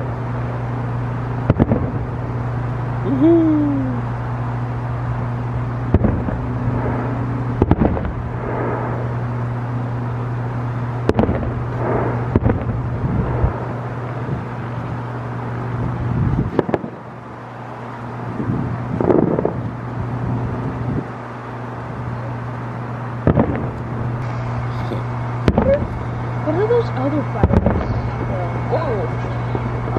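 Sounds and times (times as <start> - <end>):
steady low hum: 0.0 - 29.9
fireworks crackling: 1.4 - 2.3, 5.2 - 17.1, 23.2 - 29.9
distant fireworks booming: 1.4 - 2.7, 4.7 - 17.2, 23.2 - 29.9.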